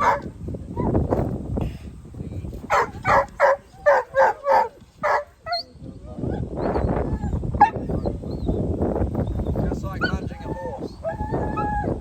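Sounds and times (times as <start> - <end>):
dog barking: 0.0 - 0.3, 2.7 - 5.3.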